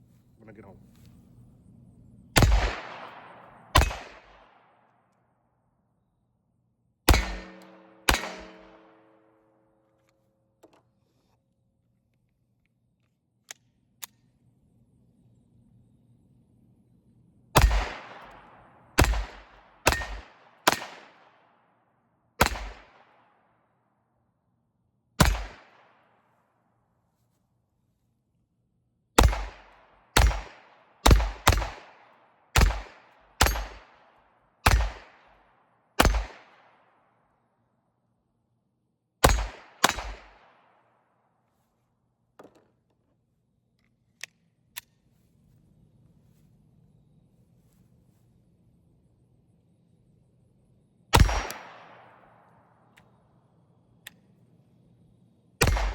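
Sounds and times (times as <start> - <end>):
pistol shots: 2.4 - 4.9, 7.1 - 9.4, 17.6 - 21.5, 22.4 - 23.3, 25.2 - 26.1, 29.2 - 35.4, 36.0 - 36.9, 39.2 - 40.8, 51.1 - 52.5, 55.6 - 55.9
faint sharp clicks: 54.0 - 54.3.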